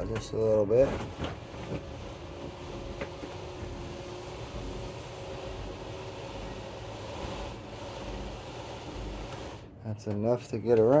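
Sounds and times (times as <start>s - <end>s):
motor humming: 1.4s - 9.7s.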